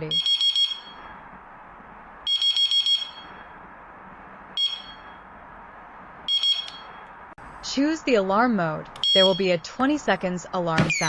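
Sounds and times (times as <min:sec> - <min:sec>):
high-pitched alarm beeps: 0:04.6 - 0:05.2, 0:09.0 - 0:11.0.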